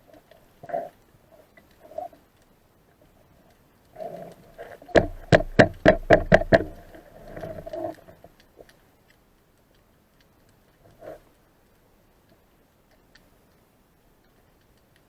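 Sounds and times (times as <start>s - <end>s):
faint steady hum: 0.0s - 15.0s
sharp knocks: 4.9s - 6.8s.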